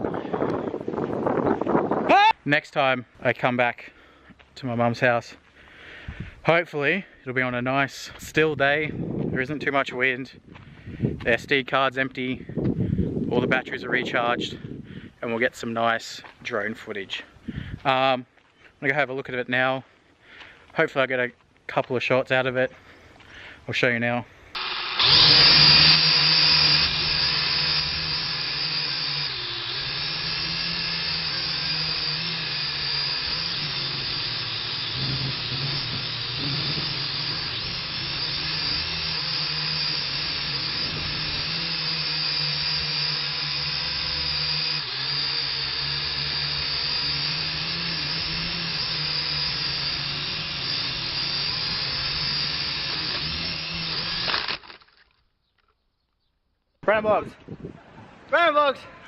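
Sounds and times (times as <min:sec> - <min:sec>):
drone propellers whirring: 0:24.6 - 0:54.7.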